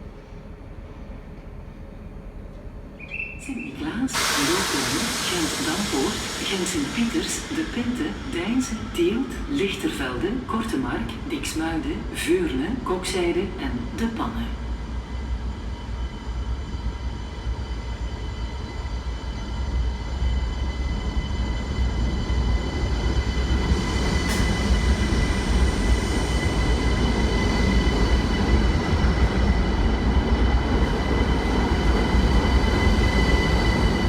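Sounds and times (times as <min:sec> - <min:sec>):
train running on rails: 0:00.0 - 0:34.0.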